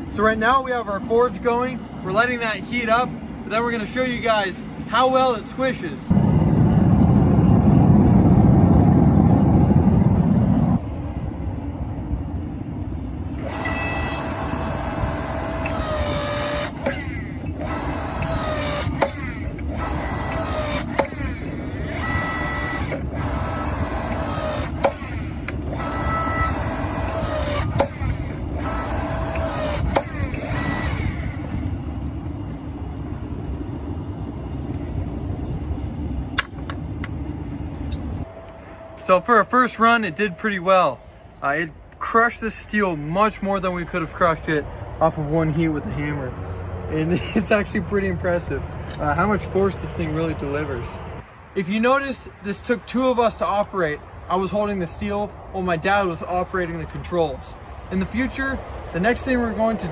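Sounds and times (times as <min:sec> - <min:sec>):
loud rushing noise: 0:06.1 - 0:13.6, 0:37.3 - 0:41.9
hydraulic pump motor whine: 0:13.3 - 0:32.8.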